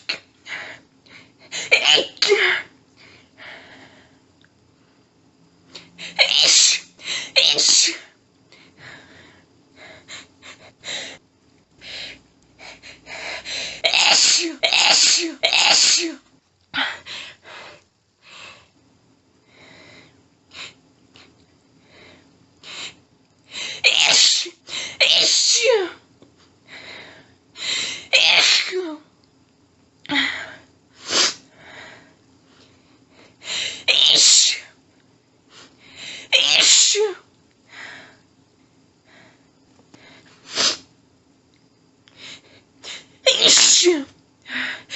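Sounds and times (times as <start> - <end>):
woman sneezing loudly: 1.6 - 2.7, 6.0 - 8.1, 13.8 - 16.2, 23.8 - 26.0, 28.1 - 29.0, 33.8 - 34.7, 36.3 - 37.2, 43.2 - 44.1
woman gasping and panting: 11.8 - 15.4.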